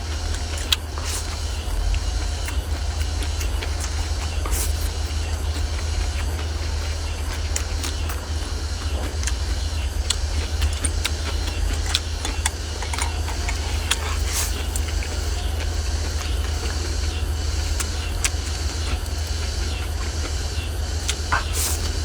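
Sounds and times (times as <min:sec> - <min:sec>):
steady low rumble: 0:00.0 - 0:22.0
wet chewing: 0:00.0 - 0:22.0
lip smacks: 0:00.1 - 0:22.0.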